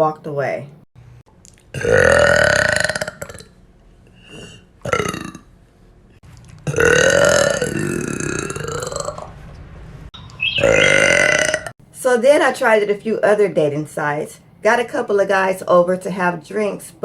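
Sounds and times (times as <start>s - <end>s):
woman burping: 1.7s - 3.5s, 4.3s - 5.5s, 6.6s - 9.2s, 10.8s - 11.7s.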